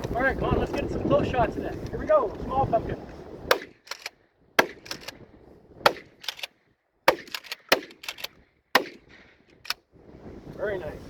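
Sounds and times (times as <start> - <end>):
shotgun shots: 3.5 - 4.0, 4.6 - 5.1, 5.8 - 6.5, 7.1 - 9.2
shotgun pump racking clicks: 3.5 - 5.2, 5.9 - 8.9.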